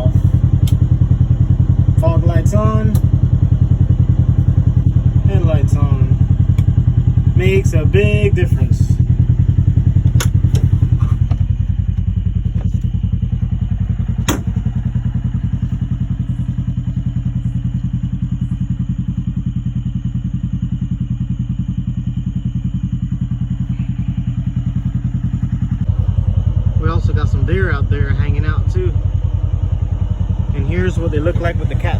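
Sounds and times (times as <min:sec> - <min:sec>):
vehicle engine idling: 0:00.0 - 0:31.9
sharp clicks: 0:00.6 - 0:00.9, 0:02.9 - 0:03.2.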